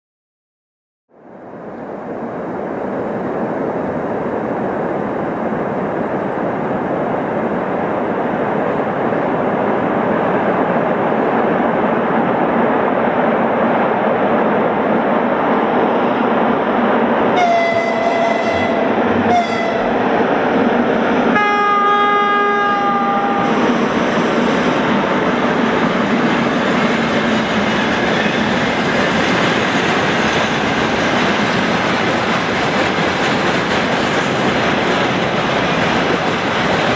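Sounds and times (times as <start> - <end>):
locomotive horn blasts: 17.4 - 20.0, 21.3 - 23.6
train wheels rolling on rails: 22.5 - 36.9.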